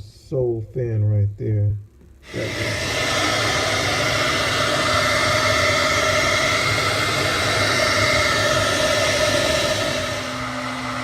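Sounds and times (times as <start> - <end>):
hair dryer running: 2.2 - 11.0.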